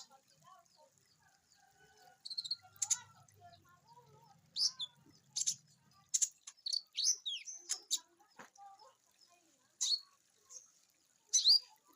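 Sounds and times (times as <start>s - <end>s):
bird chattering: 2.2s - 3.2s, 4.5s - 8.1s.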